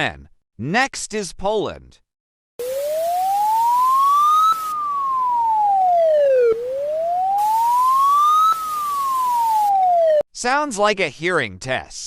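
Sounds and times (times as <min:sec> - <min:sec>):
siren wailing pure tone: 0:02.6 - 0:10.2.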